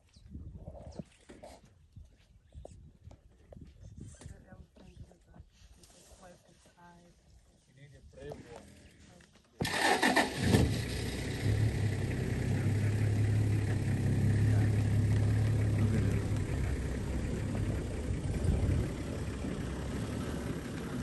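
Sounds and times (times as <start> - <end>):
vehicle engine idling: 9.7 - 21.0.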